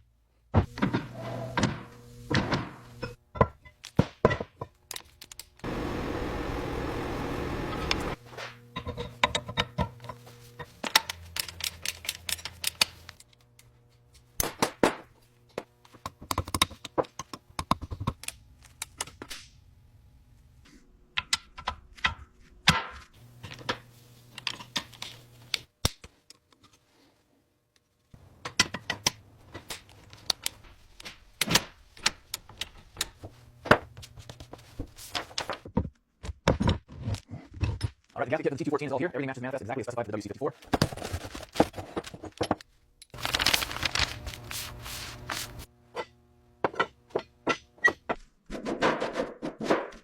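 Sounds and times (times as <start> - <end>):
low hum: 5.6 - 9.2.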